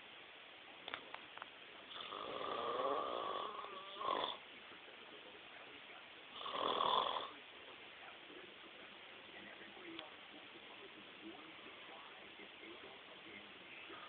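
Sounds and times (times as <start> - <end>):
man snoring: 1.9 - 4.4, 6.4 - 7.3.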